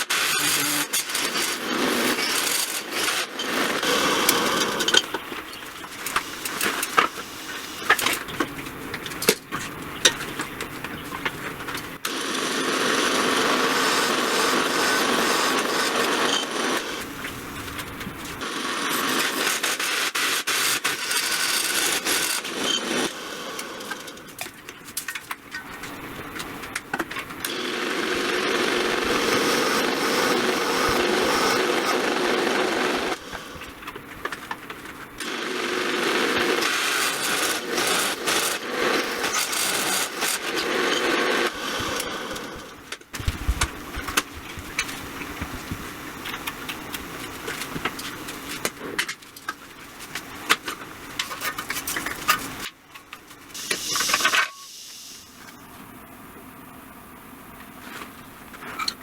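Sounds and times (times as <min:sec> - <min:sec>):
power tool running: 0:00.0 - 0:09.4, 0:11.2 - 0:24.4, 0:25.8 - 0:44.2.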